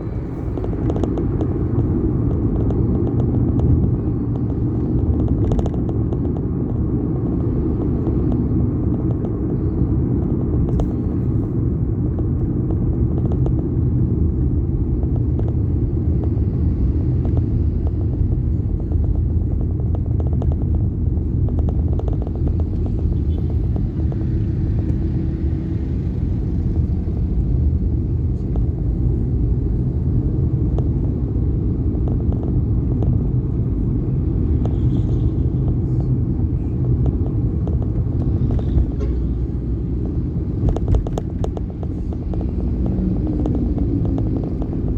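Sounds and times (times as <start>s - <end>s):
vehicle road and wind noise: 0.0s - 44.9s.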